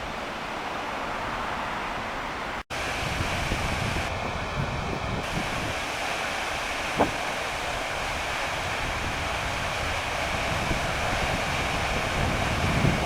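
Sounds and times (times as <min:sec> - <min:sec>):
waterfall rushing: 0:00.0 - 0:13.0
wind buffeting microphone: 0:02.7 - 0:13.0.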